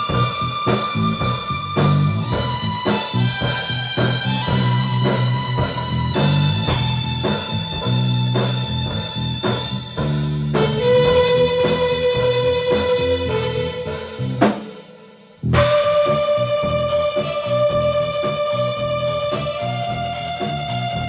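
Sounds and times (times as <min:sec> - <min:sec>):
rock band jamming: 0:00.0 - 0:21.0
sustained guitar note: 0:10.5 - 0:21.0.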